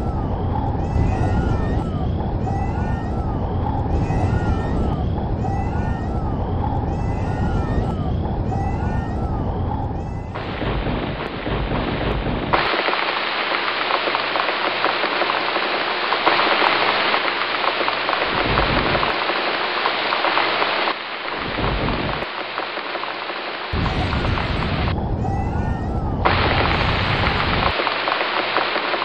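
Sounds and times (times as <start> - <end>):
low rumbles: 0.0 - 13.8, 17.7 - 22.4, 23.7 - 27.9
heavy rain: 0.0 - 29.0.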